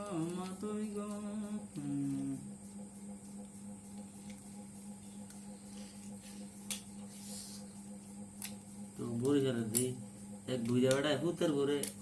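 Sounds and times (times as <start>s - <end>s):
man humming or singing: 0.0s - 2.7s
faint high whine: 0.0s - 12.0s
low electrical hum: 0.0s - 12.0s.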